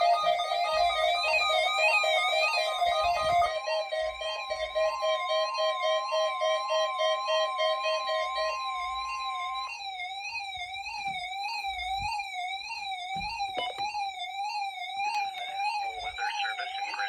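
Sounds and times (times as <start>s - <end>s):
steady warning alarm tone: 0.0s - 17.0s
warbling alert siren: 0.0s - 17.0s
soft thumps and clicks: 13.1s - 14.0s.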